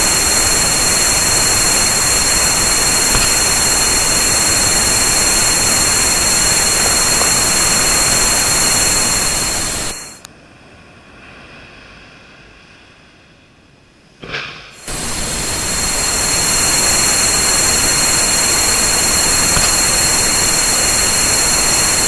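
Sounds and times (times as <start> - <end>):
high-pitched steady tones: 0.0 - 10.3, 14.8 - 22.0
white noise hiss: 0.0 - 22.0.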